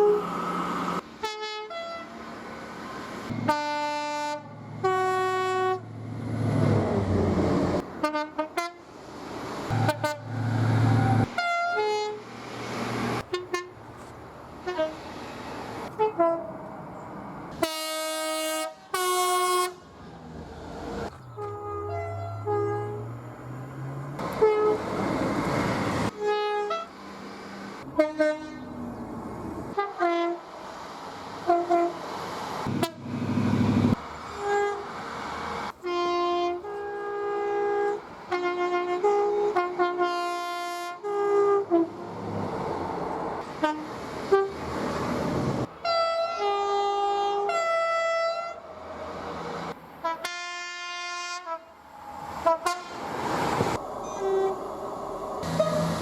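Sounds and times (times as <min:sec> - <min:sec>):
trains rushing past: 0:00.0 - 0:01.3, 0:02.0 - 0:18.5, 0:19.8 - 0:38.5, 0:41.5 - 0:50.6, 0:51.5 - 0:56.0
two-tone train horn blasts: 0:01.2 - 0:02.2, 0:03.3 - 0:06.0, 0:08.0 - 0:08.9, 0:09.7 - 0:12.2, 0:13.2 - 0:13.8, 0:14.6 - 0:15.1, 0:15.9 - 0:16.6, 0:17.5 - 0:19.8, 0:21.3 - 0:23.3, 0:24.2 - 0:25.0, 0:26.1 - 0:26.9, 0:27.9 - 0:28.8, 0:29.7 - 0:30.5, 0:32.7 - 0:33.1, 0:34.3 - 0:35.0, 0:35.7 - 0:42.0, 0:43.5 - 0:44.6, 0:45.8 - 0:48.6, 0:50.0 - 0:51.8, 0:52.4 - 0:53.2, 0:54.0 - 0:54.7, 0:55.4 - 0:56.0.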